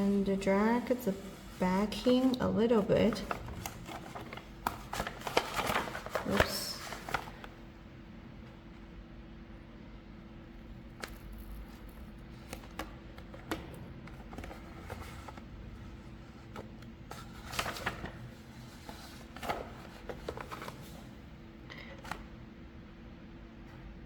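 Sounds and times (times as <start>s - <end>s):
paper rustling and crinkling: 0.0s - 7.7s, 11.0s - 21.2s.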